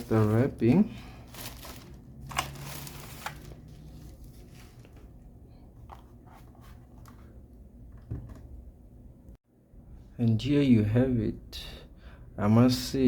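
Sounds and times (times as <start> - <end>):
plastic wrapping rustling: 0.0 - 5.1.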